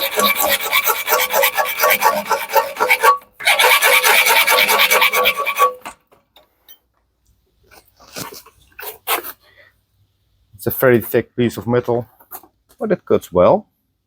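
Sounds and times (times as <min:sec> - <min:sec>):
hand saw cutting metal: 0:00.0 - 0:06.0.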